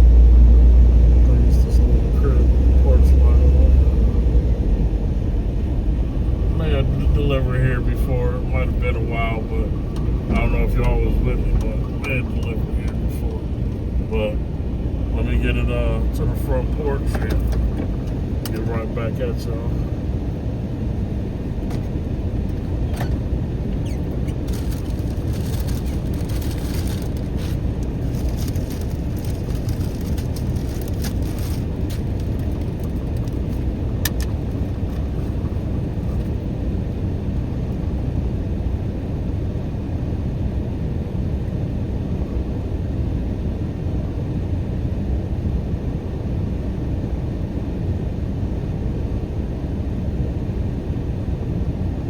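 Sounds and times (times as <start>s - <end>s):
car engine idling: 0.0s - 38.0s.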